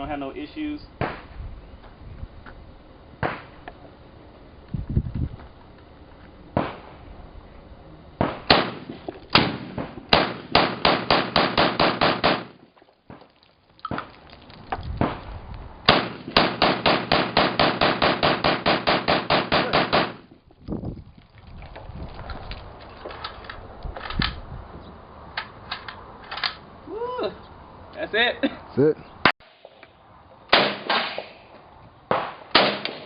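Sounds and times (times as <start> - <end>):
rifle gunshots: 8.2 - 12.6, 15.9 - 20.3, 30.5 - 31.5, 32.1 - 33.0.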